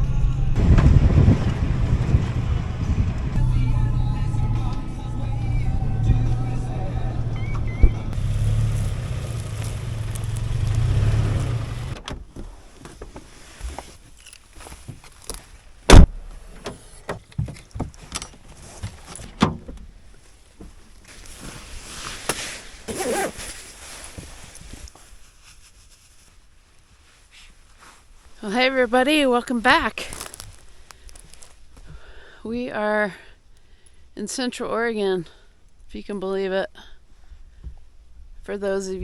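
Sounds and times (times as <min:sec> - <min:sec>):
car engine rumbling: 0:00.0 - 0:21.1
sharp thump: 0:00.6 - 0:02.5, 0:07.6 - 0:08.3, 0:15.9 - 0:16.3.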